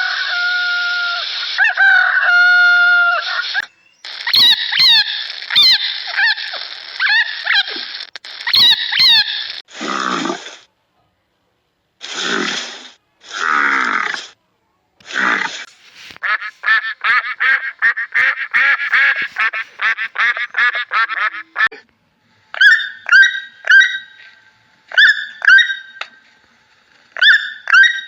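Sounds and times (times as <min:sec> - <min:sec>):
harsh farm animal calls: 0:00.0 - 0:10.6, 0:22.5 - 0:26.2, 0:27.2 - 0:28.0
short quack-like calls: 0:15.0 - 0:21.9.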